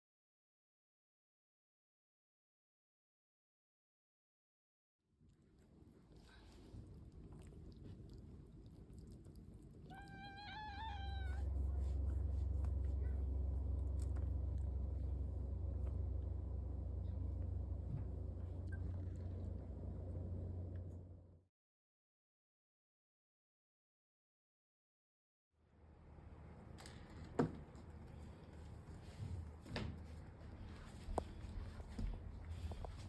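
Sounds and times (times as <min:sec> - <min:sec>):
steady low rumble: 0:05.6 - 0:21.4, 0:27.9 - 0:33.0
kitten meowing: 0:09.8 - 0:11.6.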